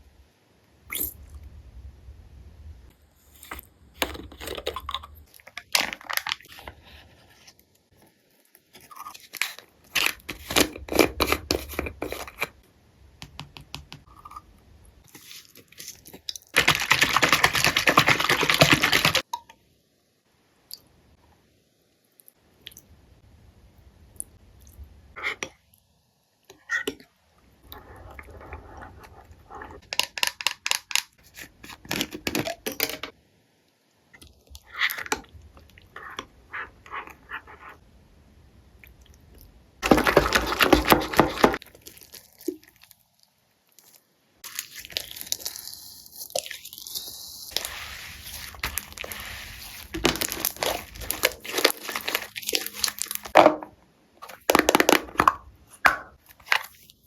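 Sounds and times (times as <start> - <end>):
slime crackling and crunching: 44.4 - 53.4.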